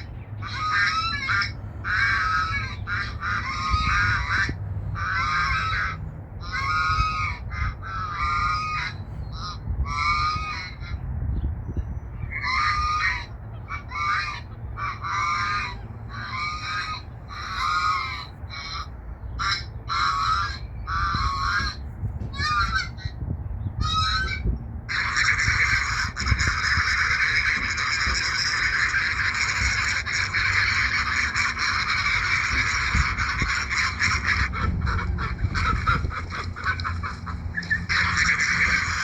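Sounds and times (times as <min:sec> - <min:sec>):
geese honking: 0:00.0 - 0:11.0, 0:12.2 - 0:23.2, 0:23.8 - 0:39.0.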